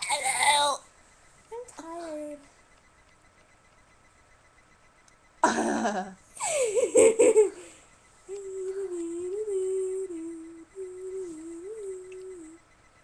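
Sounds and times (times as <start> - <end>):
girl giggling: 5.4 - 7.8
girl humming: 8.3 - 12.6.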